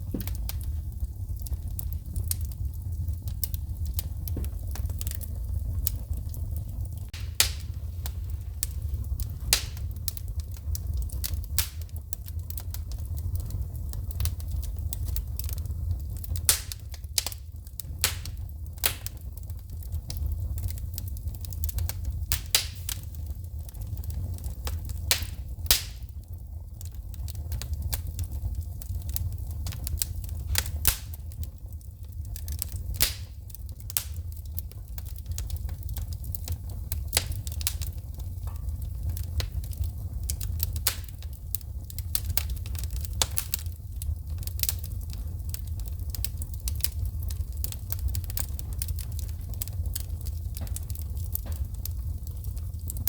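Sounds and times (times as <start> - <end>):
wood fire crackling and popping: 0.0 - 53.0.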